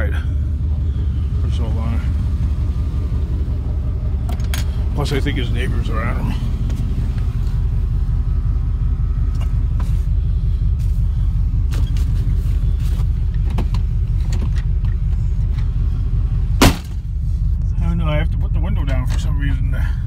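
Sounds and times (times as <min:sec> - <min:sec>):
vehicle engine rumbling: 0:00.0 - 0:20.0
vehicle door slamming: 0:16.6 - 0:17.0.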